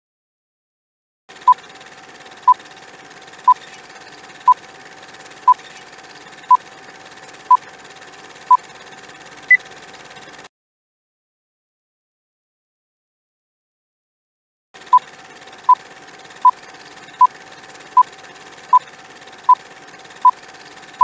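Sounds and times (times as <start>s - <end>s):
short electronic beeps: 17.2s - 17.4s.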